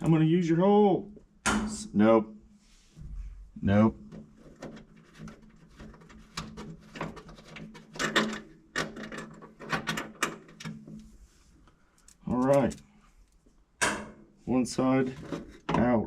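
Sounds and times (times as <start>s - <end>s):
metallic clicks and knocks: 4.1s - 11.0s.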